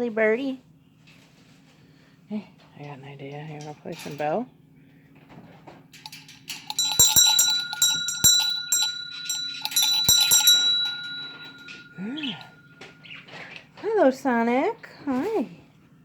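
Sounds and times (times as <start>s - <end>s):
small metal bell ringing: 6.0s - 13.6s.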